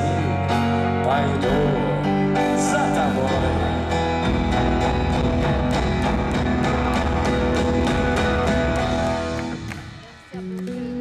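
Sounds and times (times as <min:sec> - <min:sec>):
electric guitar playing: 0:00.0 - 0:10.9
steady drum beat: 0:03.3 - 0:10.6.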